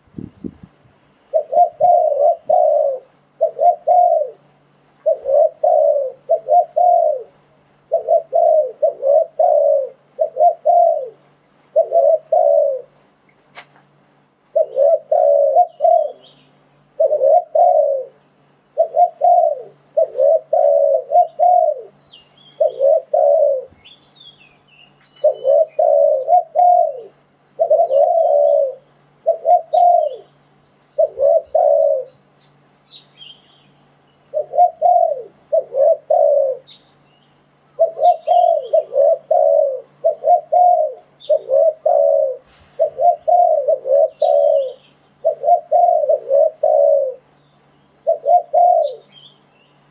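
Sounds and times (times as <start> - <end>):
dove cooing: 1.3 - 13.0, 14.5 - 23.9, 25.2 - 32.6, 34.3 - 36.8, 37.8 - 47.4, 48.0 - 49.3
small birds chirping: 14.6 - 18.1, 18.8 - 49.9.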